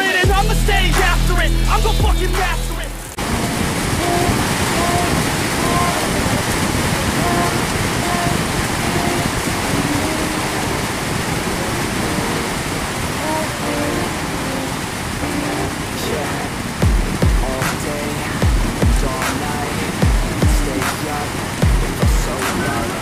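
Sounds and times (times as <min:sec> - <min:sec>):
faint voices: 0:00.0 - 0:23.0
heavy rain pouring: 0:00.0 - 0:23.0.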